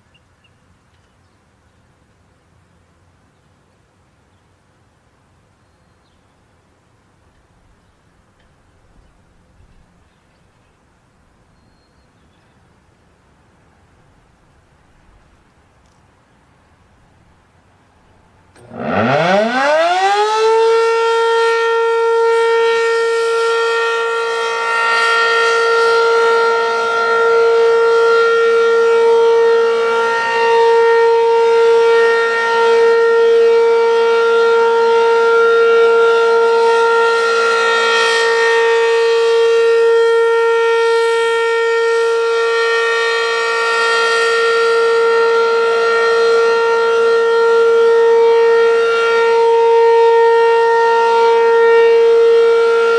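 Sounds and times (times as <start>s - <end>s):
warning siren wailing: 18.6s - 52.9s.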